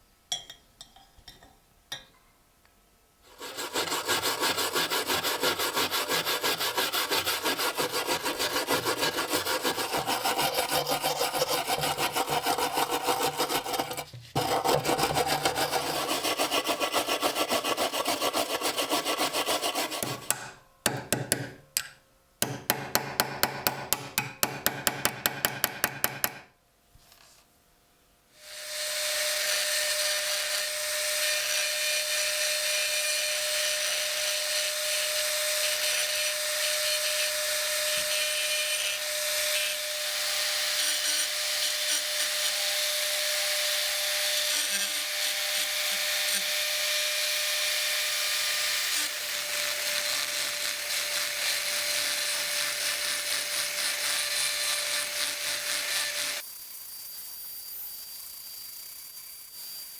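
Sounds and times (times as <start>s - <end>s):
hand tool scraping: 3.3s - 20.5s, 48.7s - 56.4s.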